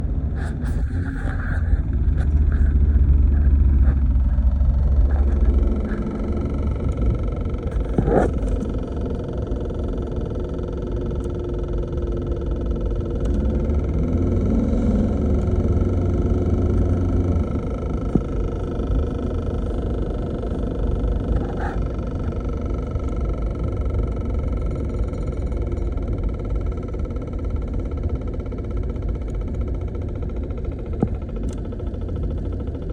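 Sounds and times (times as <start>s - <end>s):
road and engine rumble: 0.0s - 9.1s, 12.4s - 27.5s.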